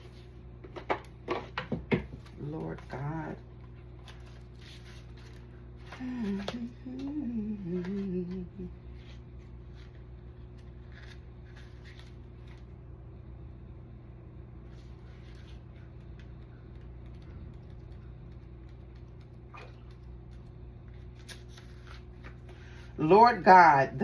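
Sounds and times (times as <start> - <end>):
low electrical hum: 0.0 - 24.0
cards and paper rustling: 2.1 - 12.7, 14.7 - 19.3, 20.9 - 23.0.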